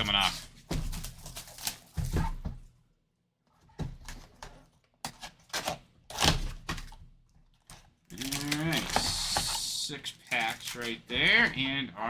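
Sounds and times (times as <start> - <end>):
shrink-wrap plastic tearing: 7.7 - 11.5.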